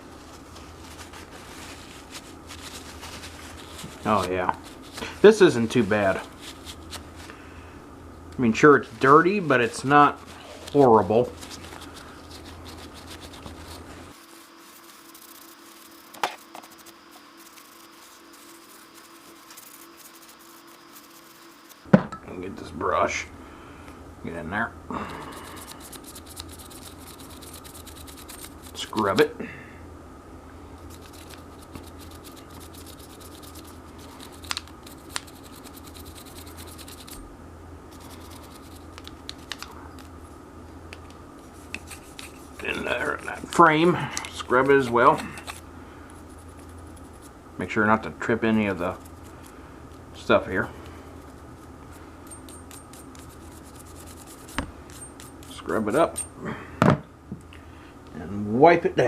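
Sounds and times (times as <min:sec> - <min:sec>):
faint steady hum: 0:00.0 - 0:59.0
brush scrubbing metal: 0:09.0 - 0:21.9, 0:25.3 - 0:29.3, 0:30.8 - 0:37.2, 0:37.9 - 0:39.6, 0:41.4 - 0:45.6, 0:46.2 - 0:47.3, 0:48.5 - 0:49.6, 0:50.2 - 0:56.3.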